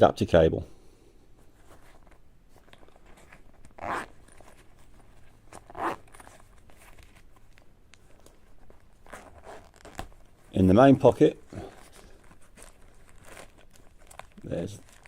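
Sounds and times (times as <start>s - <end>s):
faint handling noise: 1.3s - 15.0s
zipper pulled on fabric pouch: 3.0s - 7.3s, 8.9s - 10.1s.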